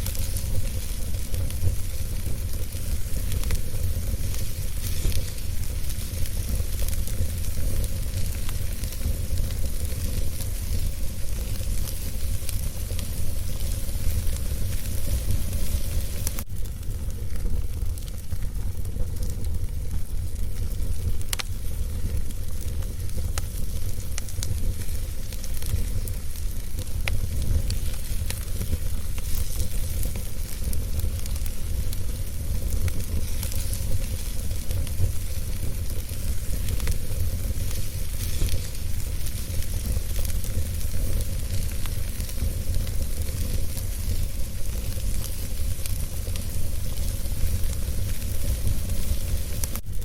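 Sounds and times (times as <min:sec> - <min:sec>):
wood fire crackling and hissing: 0:00.0 - 0:50.0.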